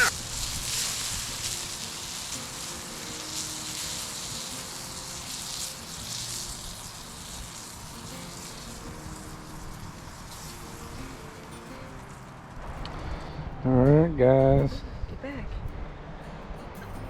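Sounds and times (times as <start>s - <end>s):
steak sizzling on a grill: 0.0s - 13.0s.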